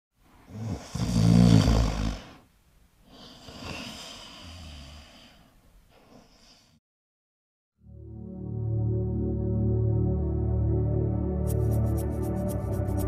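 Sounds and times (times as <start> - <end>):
person snoring: 0.5 - 2.4, 3.1 - 6.8.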